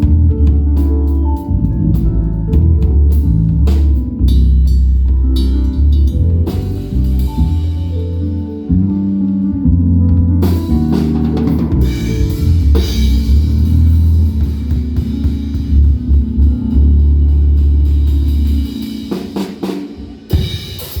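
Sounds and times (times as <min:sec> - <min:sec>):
deep held bass notes: 0:00.0 - 0:19.4
drum kit with cymbal crashes: 0:03.1 - 0:08.5, 0:10.4 - 0:21.0.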